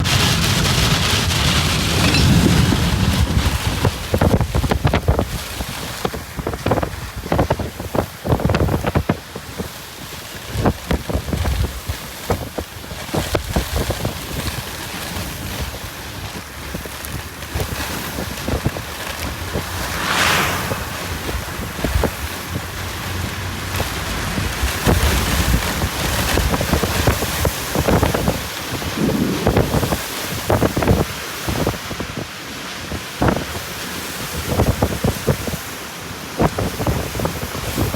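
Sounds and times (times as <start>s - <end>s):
strong wind gusting: 0.0s - 9.0s, 18.3s - 23.5s, 24.2s - 32.2s
wind thumping on microphone: 0.0s - 9.7s, 16.6s - 22.9s, 24.2s - 32.2s.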